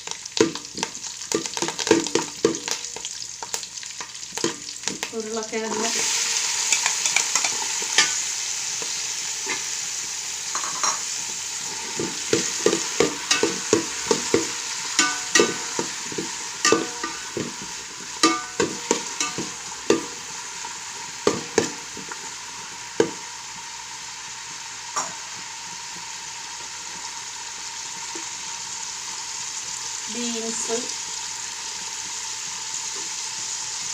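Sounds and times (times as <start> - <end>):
potatoes sizzling in hot oil: 0.0 - 33.9.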